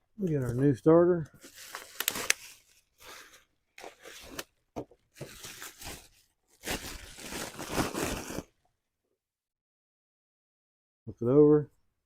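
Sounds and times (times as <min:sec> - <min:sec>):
packaging crinkling and tearing: 0:01.4 - 0:04.5, 0:05.2 - 0:08.5.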